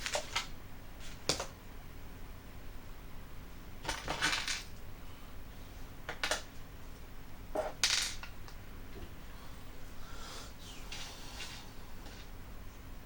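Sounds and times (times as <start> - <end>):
small plastic parts clattering: 3.8 - 4.7.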